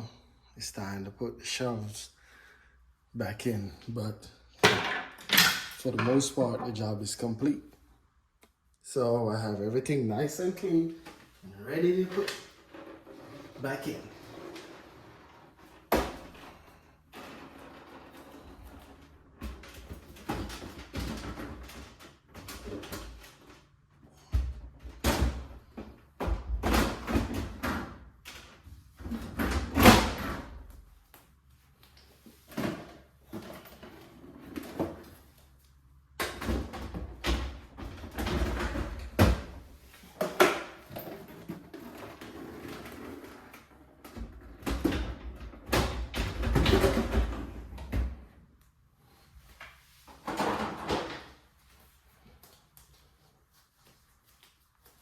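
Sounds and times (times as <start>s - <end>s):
refrigerator shelves knocking and rattling: 15.8s - 23.4s, 24.2s - 30.6s, 36.2s - 43.1s, 44.0s - 48.3s, 50.2s - 51.4s.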